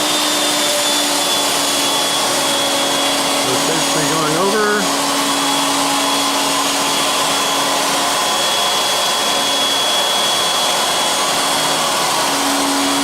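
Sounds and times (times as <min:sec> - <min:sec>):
router spindle motor whine: 0:00.0 - 0:13.0
low machine hum: 0:02.1 - 0:07.9.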